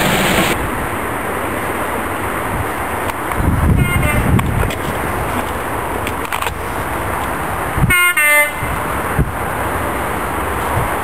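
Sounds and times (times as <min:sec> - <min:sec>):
train rumble: 0:00.0 - 0:01.1
train two-tone horn blast: 0:03.8 - 0:04.3, 0:07.8 - 0:08.7.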